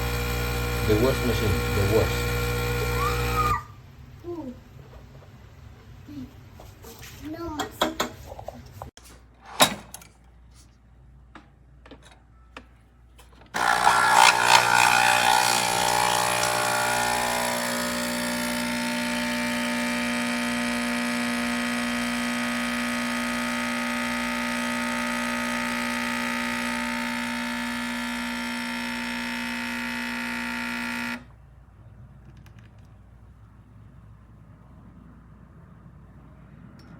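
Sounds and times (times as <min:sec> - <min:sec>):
coffee machine pump humming: 0:00.0 - 0:03.7, 0:13.6 - 0:31.2.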